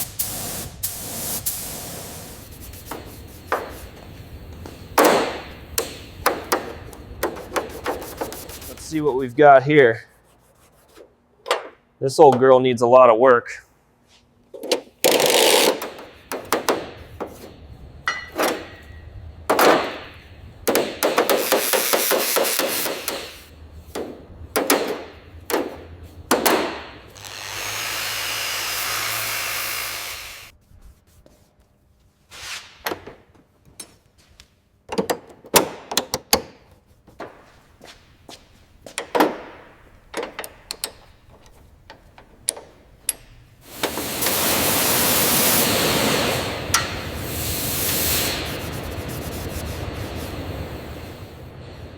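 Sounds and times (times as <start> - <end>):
steady hiss: 0.0 - 9.5, 21.1 - 23.6, 43.6 - 51.9
tools knocking and clanking: 4.6 - 8.6, 11.4 - 12.4, 18.1 - 26.9, 34.9 - 37.4, 38.9 - 43.4
fast rattling tool noise: 6.1 - 9.1, 15.0 - 17.0, 21.0 - 23.5, 27.0 - 30.5, 43.7 - 51.3.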